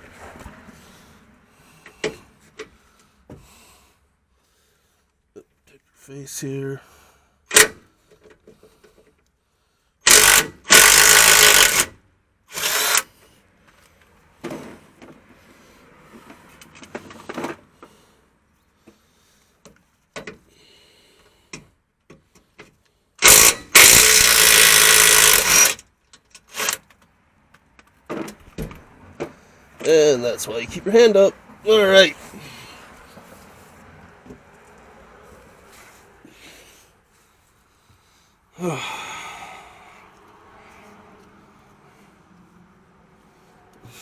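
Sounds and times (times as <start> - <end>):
impact wrench hammering on bolt: 7.5 - 7.8, 10.0 - 12.0, 23.2 - 25.8.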